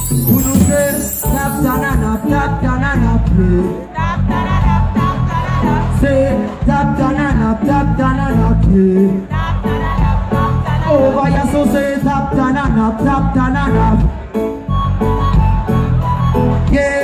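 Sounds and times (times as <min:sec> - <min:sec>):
person singing: 0:00.0 - 0:13.3.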